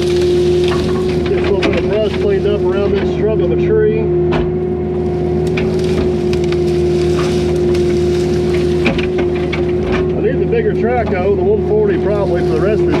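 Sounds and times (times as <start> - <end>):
diesel engine humming: 0.0 - 13.0
sharp cracks and knocks: 5.4 - 10.1.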